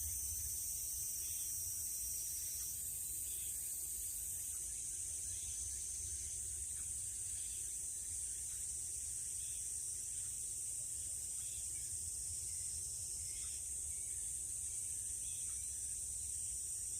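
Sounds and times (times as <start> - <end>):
crickets chirping chorus: 0.0 - 16.9.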